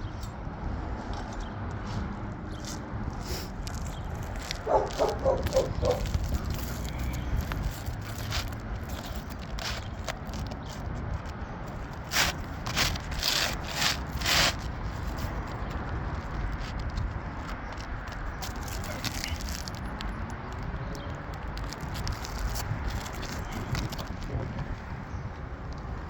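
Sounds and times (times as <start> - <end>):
scraping rubs on microphone: 3.2 - 19.8, 21.8 - 25.0.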